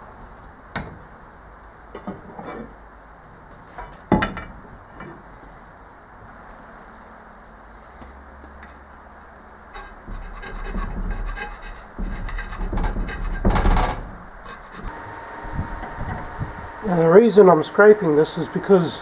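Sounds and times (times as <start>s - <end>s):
scraper rasping on metal: 9.7s - 17.0s.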